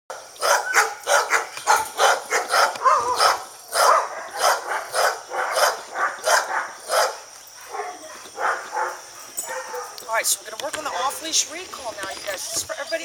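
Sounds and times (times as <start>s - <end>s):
dog barking: 0.1s - 10.1s.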